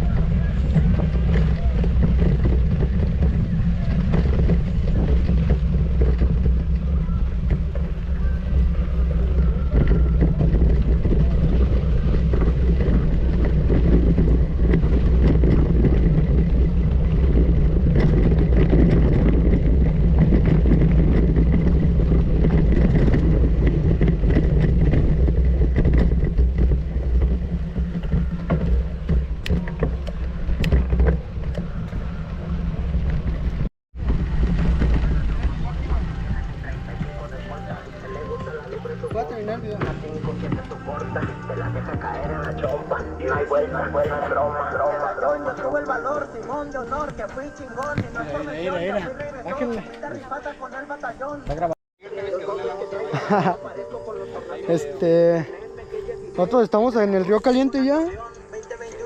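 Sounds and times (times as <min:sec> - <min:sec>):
vehicle engine running: 0:00.0 - 0:50.4
wind noise on microphone: 0:00.0 - 0:51.8.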